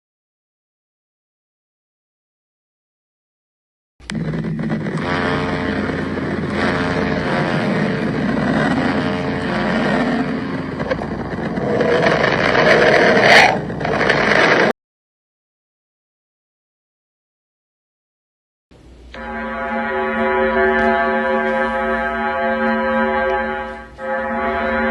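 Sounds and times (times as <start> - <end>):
dense noisy drone with tones: 4.0 - 14.7, 18.8 - 24.9
sharp crackle: 4.0 - 14.7.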